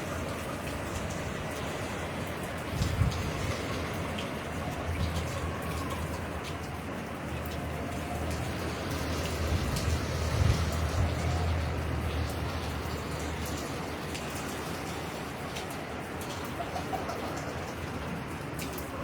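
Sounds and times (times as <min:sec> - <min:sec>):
heavy rain falling: 0:00.0 - 0:19.0
wind buffeting microphone: 0:02.4 - 0:06.0, 0:09.1 - 0:14.2.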